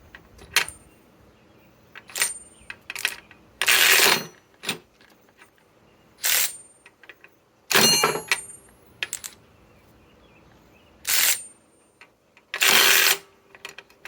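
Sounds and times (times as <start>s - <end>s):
metallic ringing clinks: 7.8s - 9.3s.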